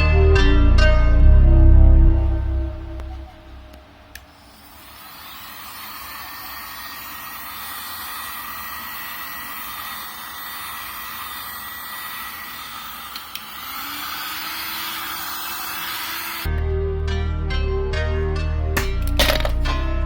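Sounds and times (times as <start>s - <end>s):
thin high tone: 2.0s - 8.5s
small motor-driven tool rushing: 2.9s - 16.5s.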